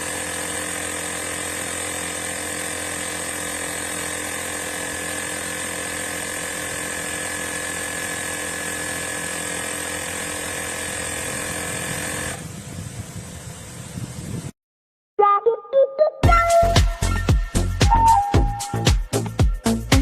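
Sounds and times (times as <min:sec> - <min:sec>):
tire inflator compressor running: 0:00.0 - 0:14.3.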